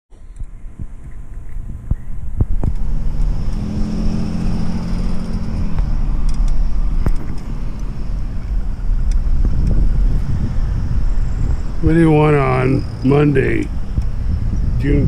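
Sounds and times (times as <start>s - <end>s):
steady low rumble: 0.1s - 15.0s
car engine hum passing: 0.6s - 15.0s
sharp clicks: 2.4s - 3.7s, 5.0s - 9.8s.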